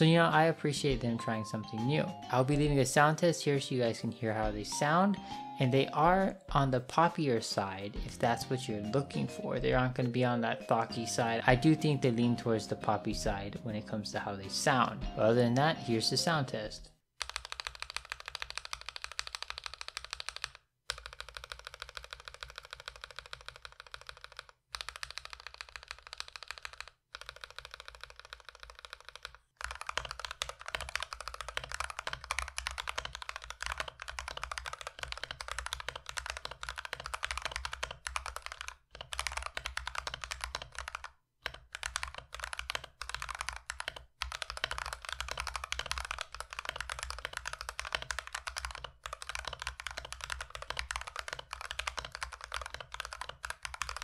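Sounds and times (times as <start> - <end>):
fast typing on mechanical keyboard: 17.2 - 54.0.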